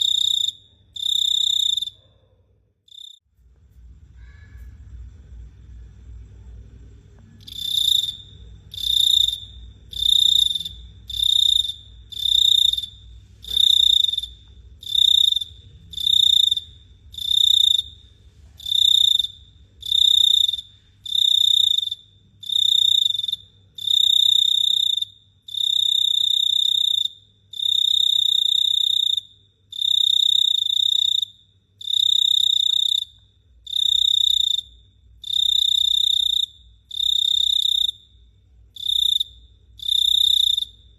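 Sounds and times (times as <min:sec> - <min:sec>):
cricket trilling: 0:00.0 - 0:02.0, 0:04.1 - 0:40.9
faint low hum: 0:01.9 - 0:23.9.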